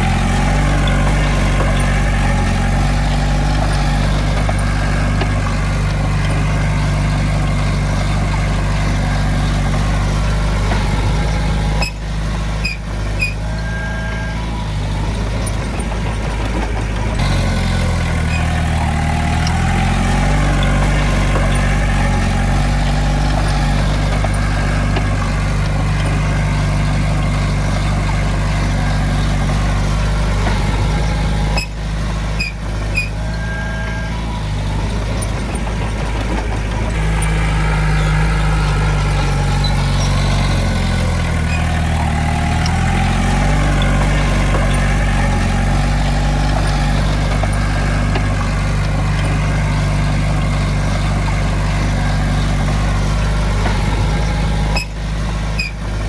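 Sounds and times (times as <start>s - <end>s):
heavy diesel engine running: 0.0s - 56.0s
short tone: 12.6s - 14.6s, 32.4s - 34.3s.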